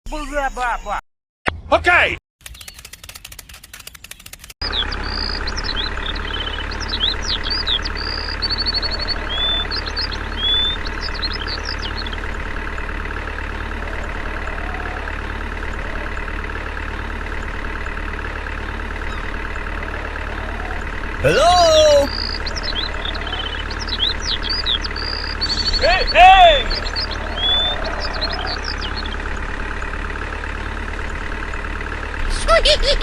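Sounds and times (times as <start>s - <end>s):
rapid ticking: 2.4s - 4.6s
tractor engine idling: 2.5s - 33.0s
birds chirping and whistling: 4.1s - 12.4s, 22.0s - 29.7s.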